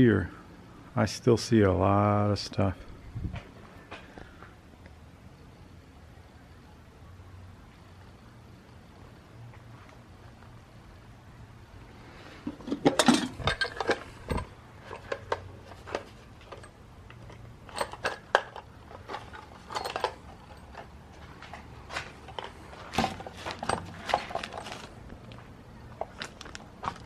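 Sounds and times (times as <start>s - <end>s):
metal tools clinking: 12.5s - 25.4s.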